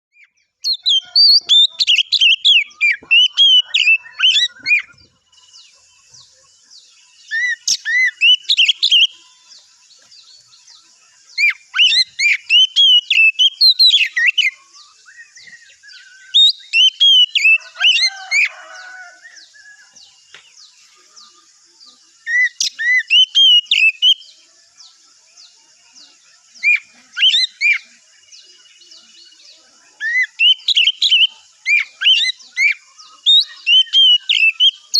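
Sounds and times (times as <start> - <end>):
bird singing whistled phrases: 0.1 - 6.3, 7.3 - 9.6, 11.3 - 19.9, 22.2 - 24.3, 30.0 - 34.9.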